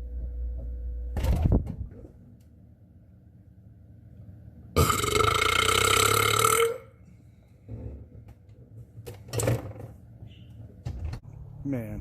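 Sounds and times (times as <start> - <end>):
long loud burp: 4.8 - 7.0.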